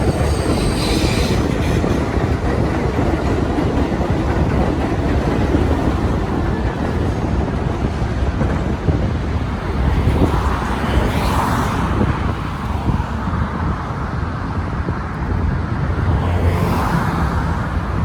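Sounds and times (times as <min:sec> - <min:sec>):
city street traffic: 0:00.0 - 0:18.0
wind rumble on microphone: 0:00.0 - 0:18.0.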